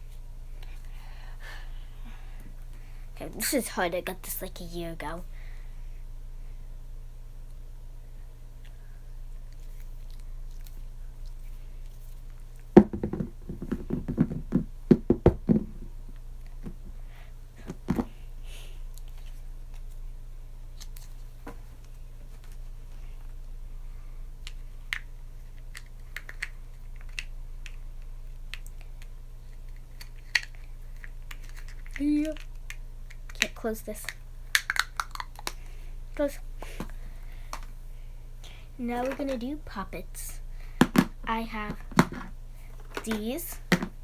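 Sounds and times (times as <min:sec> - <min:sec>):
container knocks and thuds: 0:12.8 - 0:15.9.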